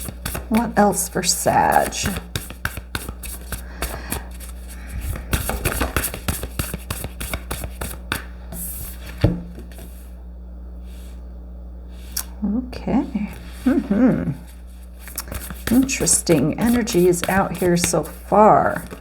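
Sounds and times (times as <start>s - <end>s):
cards shuffling: 0.0s - 10.0s, 15.0s - 19.0s.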